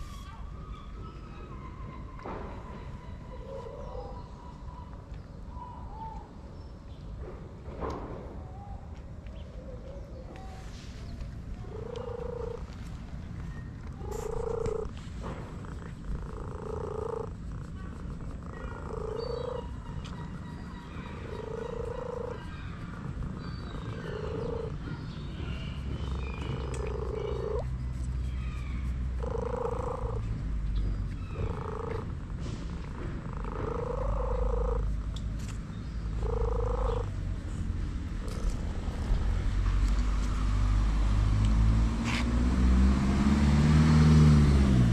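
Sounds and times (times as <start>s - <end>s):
cat purring: 11.8s - 12.7s, 14.0s - 30.4s, 31.4s - 37.2s.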